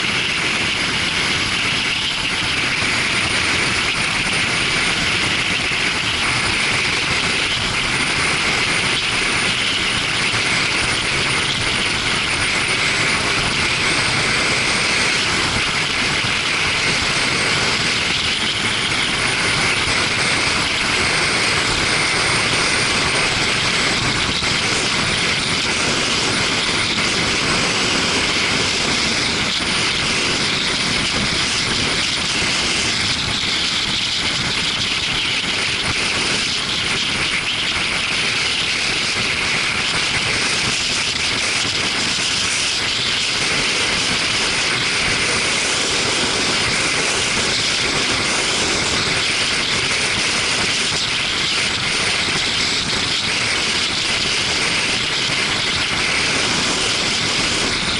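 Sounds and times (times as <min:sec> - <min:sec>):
motorcycle engine: 0:00.0 - 0:36.8
wind and road noise: 0:00.0 - 0:57.9.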